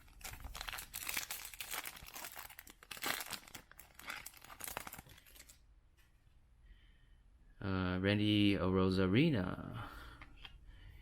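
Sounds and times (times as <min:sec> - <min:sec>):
foil wrapper tearing and crinkling: 0:00.0 - 0:05.6.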